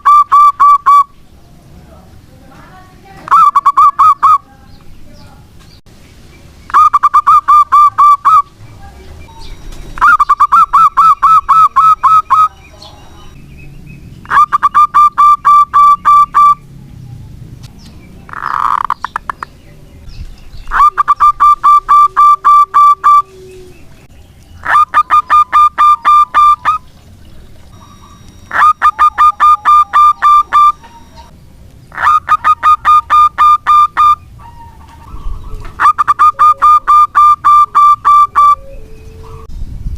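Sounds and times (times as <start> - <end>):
dove staccato cooing: 20.7 - 26.9, 27.8 - 31.3, 31.9 - 39.5.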